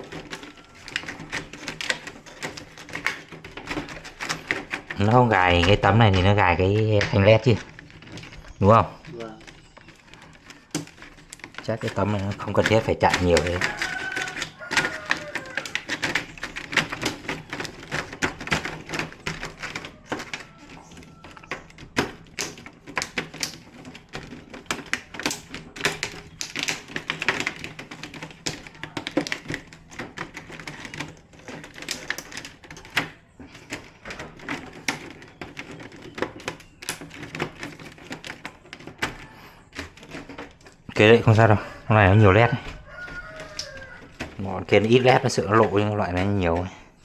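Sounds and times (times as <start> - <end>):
hands handling plastic parts: 0.0 - 47.0.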